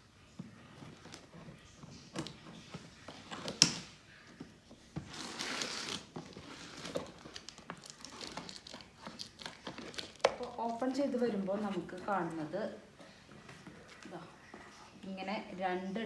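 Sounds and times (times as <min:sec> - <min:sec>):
packaging crinkling and rustling: 0:00.2 - 0:14.8
tearing rustle: 0:05.0 - 0:11.7.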